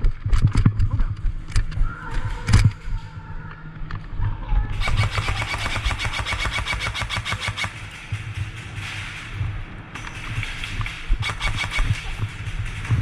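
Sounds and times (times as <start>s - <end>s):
low rumble: 0.0s - 6.3s, 7.6s - 13.0s
airsoft gun rapid fire: 4.8s - 13.0s.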